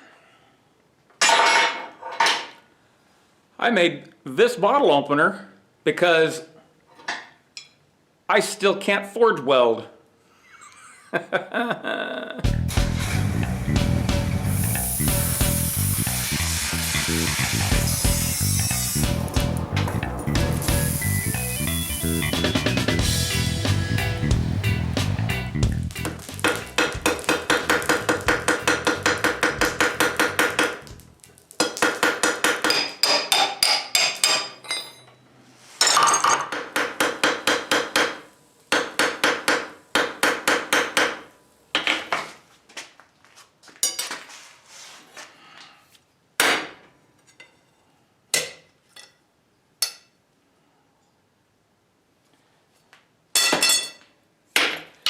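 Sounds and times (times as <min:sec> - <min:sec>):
hammer striking steel on anvil: 0:26.4 - 0:30.8, 0:31.6 - 0:35.0.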